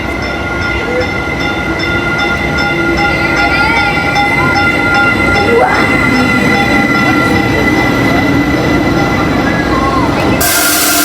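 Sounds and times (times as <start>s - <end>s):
rumble of train wheels: 0.0s - 11.0s
train brakes squealing: 4.0s - 11.0s.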